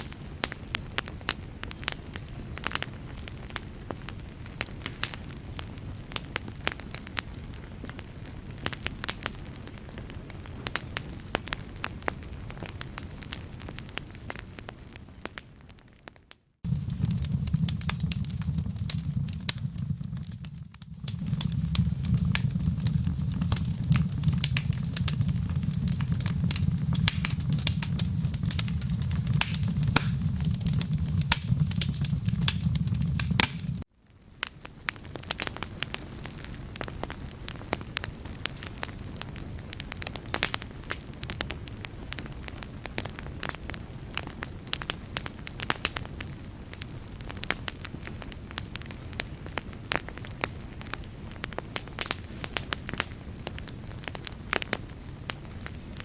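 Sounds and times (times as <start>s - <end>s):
wood fire crackling: 0.0s - 56.0s
low steady rumble: 16.7s - 33.8s.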